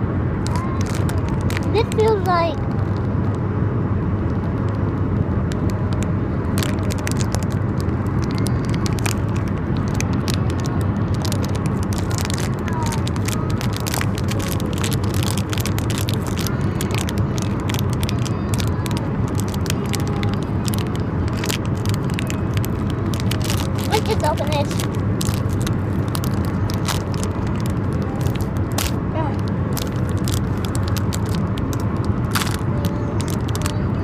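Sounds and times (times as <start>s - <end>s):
road rumble inside car: 0.0s - 34.0s
foil bag crinkling: 0.4s - 2.2s, 5.6s - 33.9s.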